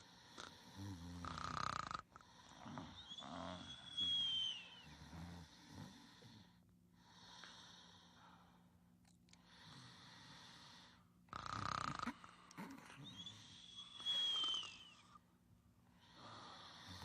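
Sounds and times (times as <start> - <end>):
cartoon snoring: 0.0 - 3.8, 11.3 - 13.6.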